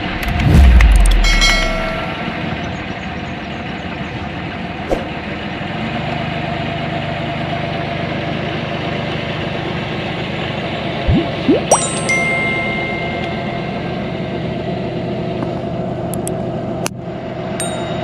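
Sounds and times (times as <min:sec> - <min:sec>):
deep even hum: 0:00.0 - 0:02.4, 0:11.0 - 0:14.6.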